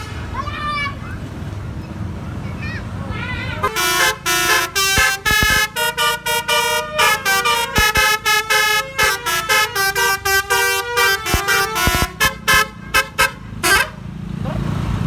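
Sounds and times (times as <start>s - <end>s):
musical car horn playing tune: 3.6s - 14.0s.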